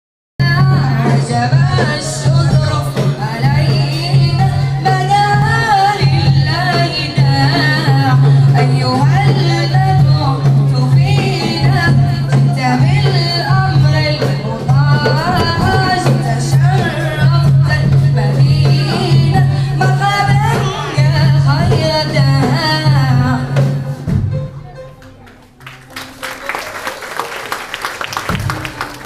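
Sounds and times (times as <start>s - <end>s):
vocal group singing: 0.4s - 23.5s.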